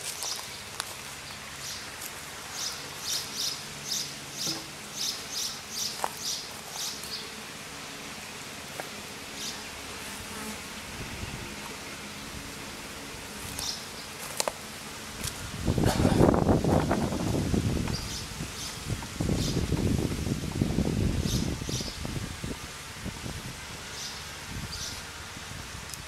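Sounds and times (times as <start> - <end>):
bees buzzing: 1.5 - 25.7.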